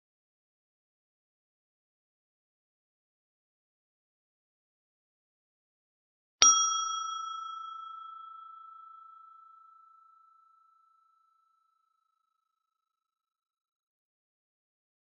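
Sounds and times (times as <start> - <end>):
small brass bell ringing: 6.4 - 11.2.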